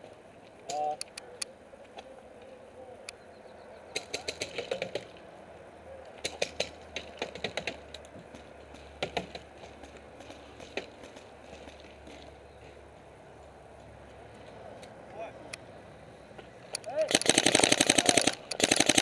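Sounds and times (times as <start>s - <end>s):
paintball markers firing: 4.0s - 5.2s, 16.8s - 19.0s.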